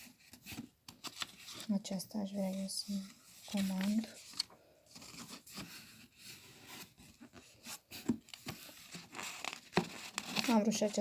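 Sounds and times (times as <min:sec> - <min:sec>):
paper pages rustling: 0:00.0 - 0:11.0.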